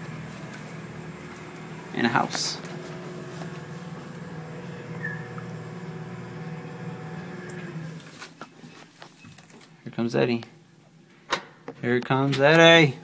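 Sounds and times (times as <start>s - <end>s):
high whine: 0.0s - 8.0s
elevator motor hum: 0.0s - 8.1s.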